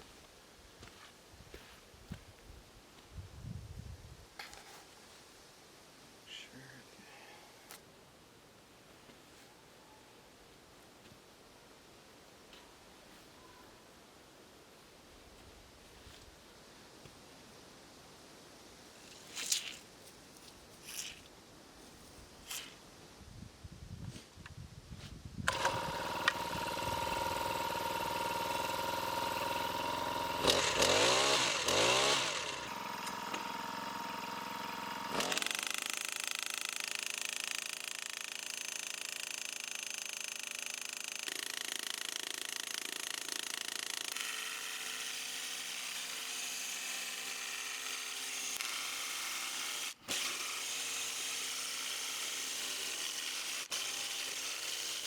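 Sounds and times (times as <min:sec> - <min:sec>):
power tool cutting steel pipe: 0:25.5 - 0:55.0.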